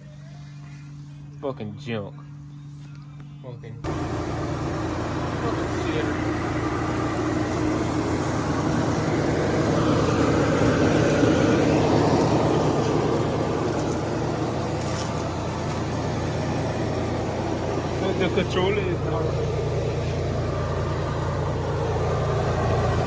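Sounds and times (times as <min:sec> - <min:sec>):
vehicle engine idling: 0:03.8 - 0:23.0.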